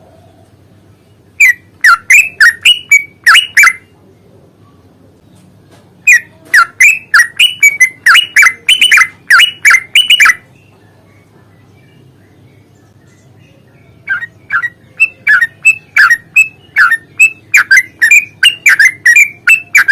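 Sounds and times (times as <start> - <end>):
bird singing downward-sliding notes: 6.0 - 19.9.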